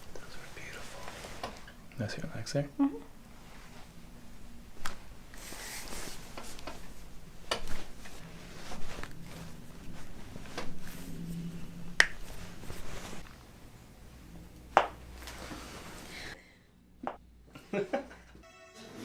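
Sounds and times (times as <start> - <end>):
hands rustling on fabric: 12.0 - 13.5.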